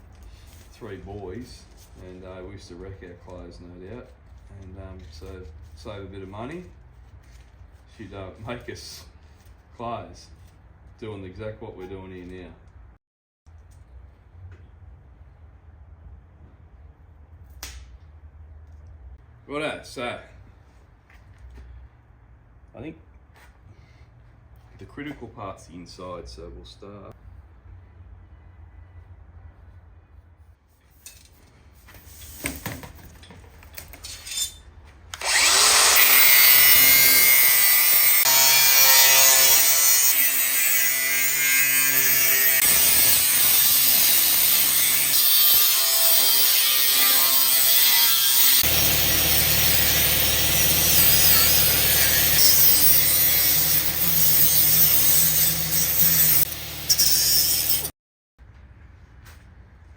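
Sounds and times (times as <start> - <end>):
power tool cutting: 35.2 - 57.9.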